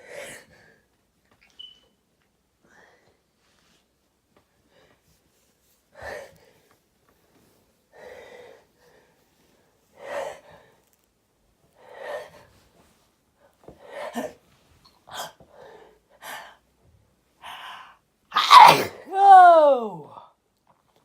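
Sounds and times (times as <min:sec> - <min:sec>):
person gasping before sneeze: 0:18.4 - 0:19.2.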